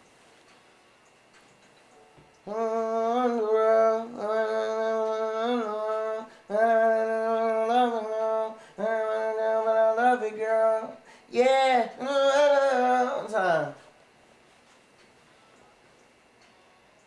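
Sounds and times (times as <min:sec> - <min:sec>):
man singing wordless melody: 0:02.4 - 0:13.9.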